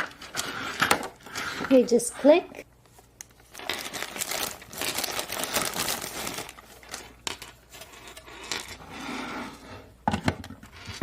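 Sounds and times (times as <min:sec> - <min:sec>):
plastic toy parts rustling: 0:03.2 - 0:08.8.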